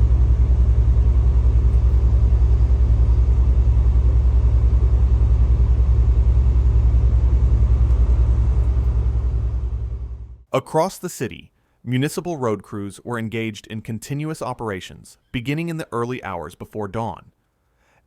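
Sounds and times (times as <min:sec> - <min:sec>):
engine rumbling: 0:00.0 - 0:10.5.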